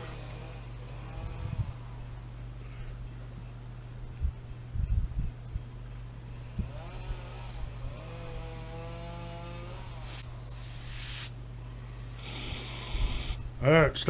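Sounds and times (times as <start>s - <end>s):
aerosol spray hissing: 10.0s - 11.4s, 12.0s - 13.4s.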